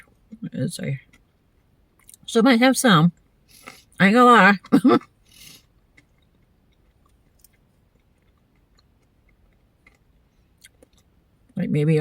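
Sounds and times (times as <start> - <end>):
quiet chewing mouth clicks: 3.5 - 3.9, 5.3 - 11.1.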